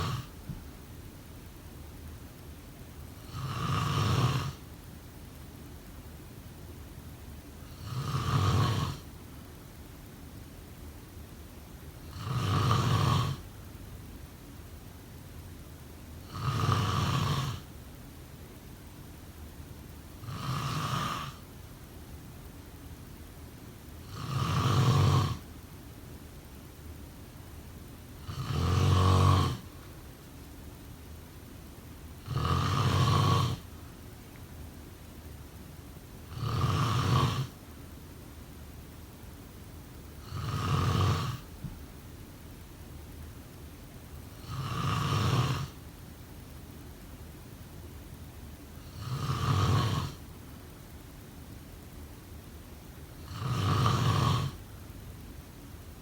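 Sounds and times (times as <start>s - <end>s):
person snoring: 0.0s - 0.3s, 3.2s - 4.6s, 7.7s - 9.1s, 12.1s - 13.4s, 16.3s - 17.7s, 20.2s - 21.4s, 24.0s - 25.4s, 28.2s - 29.7s, 32.2s - 33.6s, 36.2s - 37.6s, 40.2s - 41.5s, 44.4s - 45.8s, 48.8s - 50.2s, 53.2s - 54.6s.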